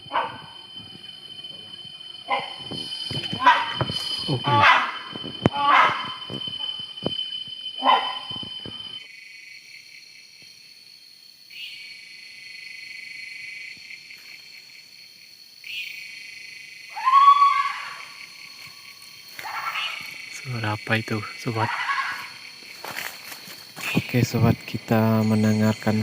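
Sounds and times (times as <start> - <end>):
night insects droning: 0.0 - 26.0
loud animal call: 3.4 - 6.8, 7.8 - 8.4, 16.9 - 18.2, 21.6 - 22.4.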